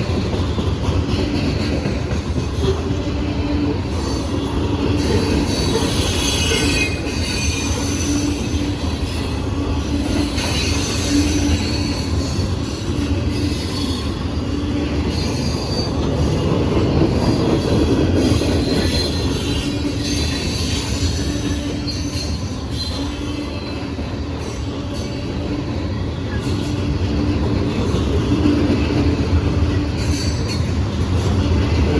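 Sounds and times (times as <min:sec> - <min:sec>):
freight train rumbling past: 0:00.0 - 0:31.9
high wheel squeals: 0:03.5 - 0:16.4, 0:17.2 - 0:25.5.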